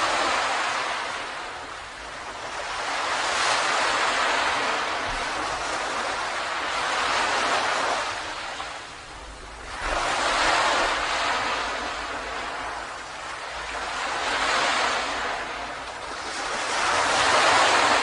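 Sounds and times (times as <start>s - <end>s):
ocean waves breaking on beach: 0.0s - 18.0s.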